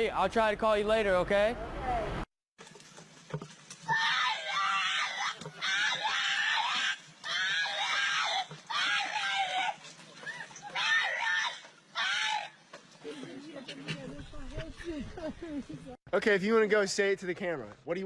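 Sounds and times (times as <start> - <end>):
high-pitched screaming: 3.9 - 12.6.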